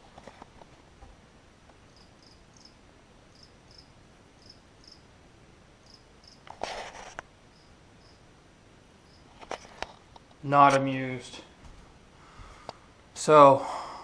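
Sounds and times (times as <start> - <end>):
cricket chirping: 1.9 - 5.1, 5.8 - 6.5, 7.5 - 8.3, 9.0 - 9.7.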